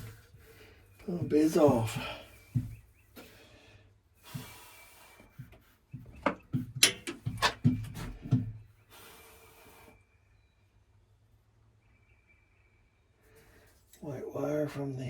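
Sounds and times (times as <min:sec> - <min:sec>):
rubbing and scraping: 0:00.0 - 0:03.3
sharp clicks and knocks: 0:06.0 - 0:08.5.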